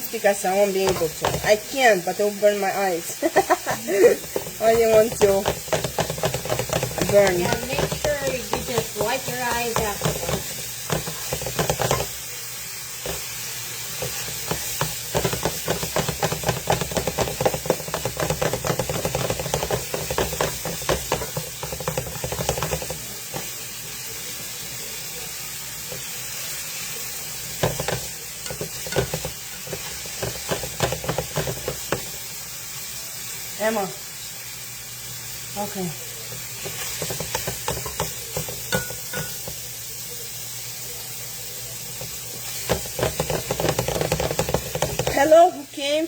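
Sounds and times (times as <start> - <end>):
knife chopping on cutting board: 4.4 - 12.1.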